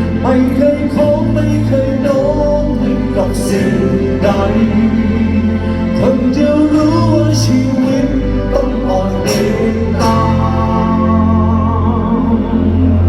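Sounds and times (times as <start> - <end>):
live rock band music: 0.0 - 13.0.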